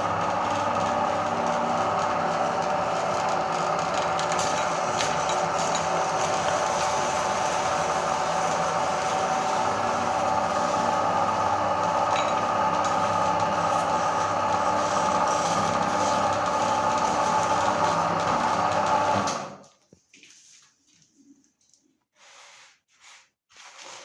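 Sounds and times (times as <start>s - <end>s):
meat grinder motor running: 0.0s - 19.6s.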